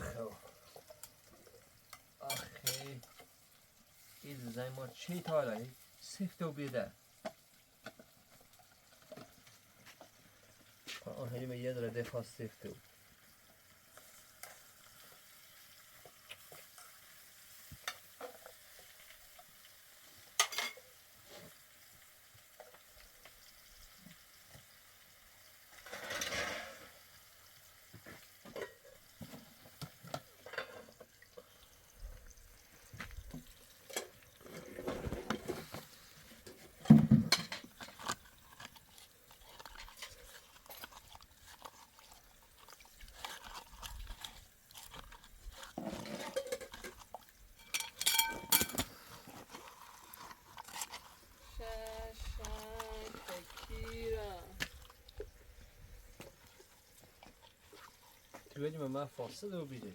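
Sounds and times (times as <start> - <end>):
faint sizzle: 0.0 - 44.7, 45.5 - 59.9
utensil clinking and scraping pan: 1.9 - 3.4, 4.3 - 8.2, 20.4 - 21.4, 25.8 - 27.0, 28.4 - 31.2, 33.4 - 44.5, 45.6 - 54.5.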